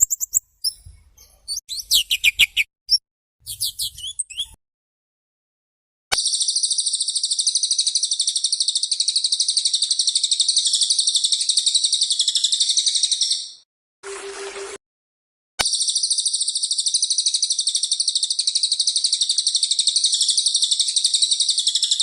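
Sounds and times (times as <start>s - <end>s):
high-pitched bird trill: 0.0s - 2.7s, 3.4s - 4.6s.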